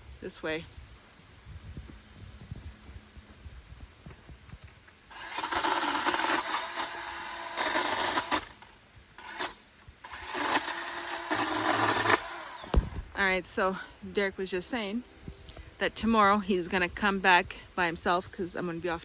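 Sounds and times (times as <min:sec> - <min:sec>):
chainsaw cutting branch: 0:05.1 - 0:13.2.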